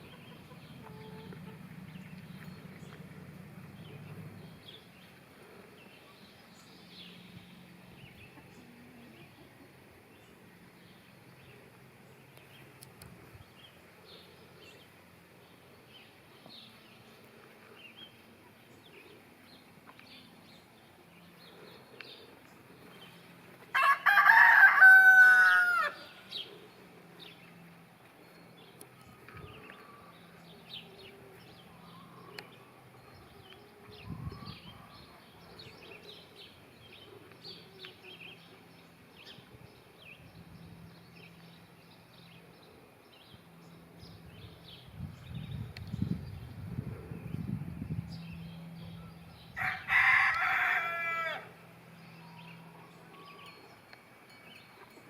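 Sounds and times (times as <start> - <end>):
rooster crowing: 23.7 - 26.2, 49.6 - 51.6.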